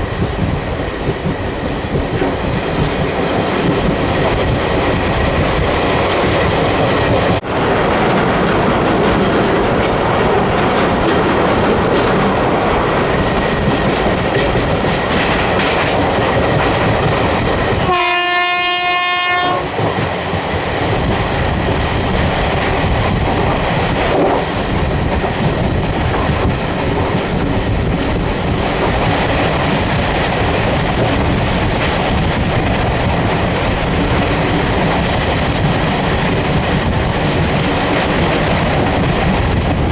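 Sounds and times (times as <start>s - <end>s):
passenger train running on track: 0.0s - 39.9s
locomotive horn: 17.8s - 19.8s.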